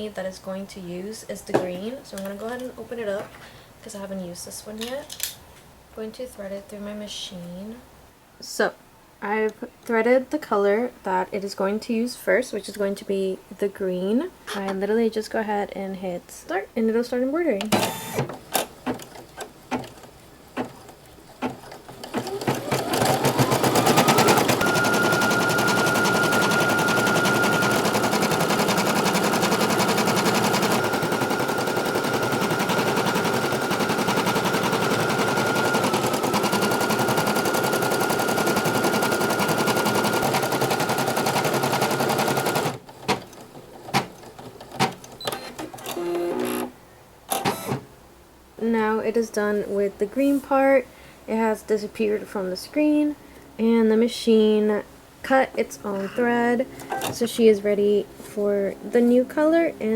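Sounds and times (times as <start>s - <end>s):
embroidery machine stitching: 17.7s - 46.7s, 47.3s - 47.8s.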